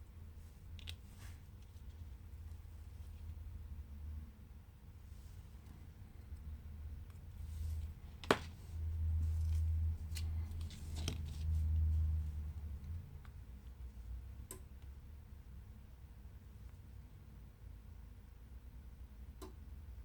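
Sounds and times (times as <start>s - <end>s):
low rumble of handling: 0.1s - 14.4s.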